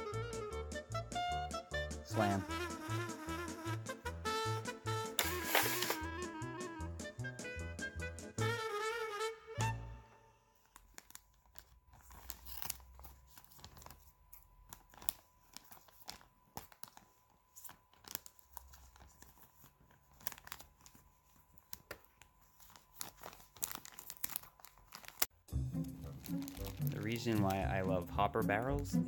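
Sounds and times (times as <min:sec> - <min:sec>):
packaging crinkling and tearing: 0:05.2 - 0:06.1, 0:10.6 - 0:27.9.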